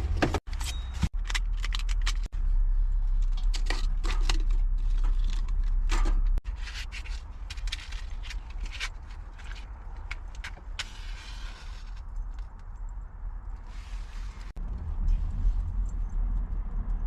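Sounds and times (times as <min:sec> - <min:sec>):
low rumble: 0:01.2 - 0:06.5, 0:12.1 - 0:17.0.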